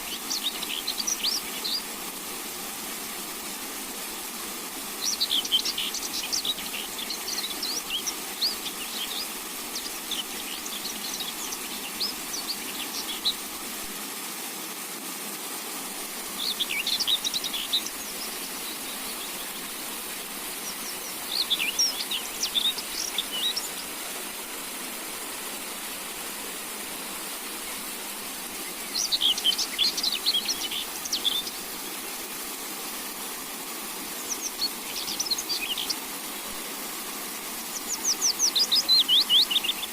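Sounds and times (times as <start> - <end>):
steady hiss: 0.0 - 39.9
songbird chirping: 5.0 - 13.4, 16.3 - 19.8, 20.6 - 24.0, 28.7 - 31.6, 34.2 - 36.0, 37.7 - 39.9.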